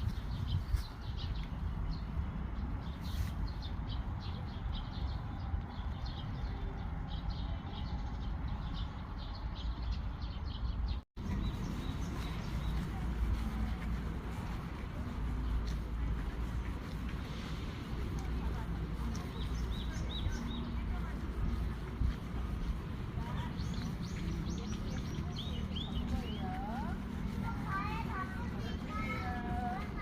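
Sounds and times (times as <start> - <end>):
small birds chirping: 0.0 - 30.0
steady low rumble: 11.2 - 30.0.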